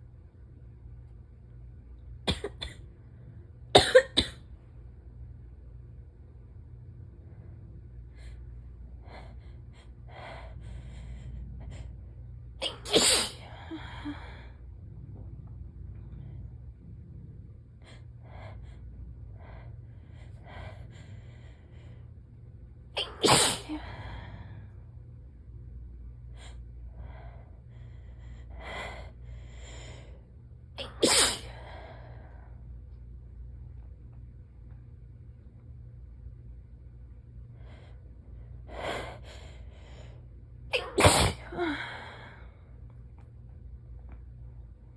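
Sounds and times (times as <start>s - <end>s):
person sneezing: 12.6s - 13.5s, 23.0s - 23.8s, 30.8s - 31.6s, 40.8s - 41.9s.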